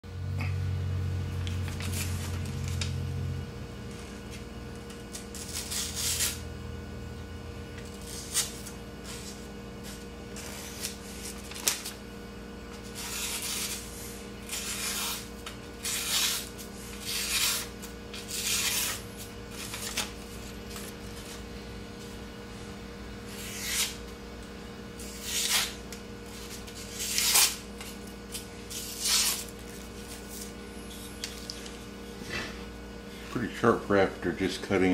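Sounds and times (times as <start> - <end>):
knife scraping through wood: 12.9 - 20.1, 23.3 - 24.0.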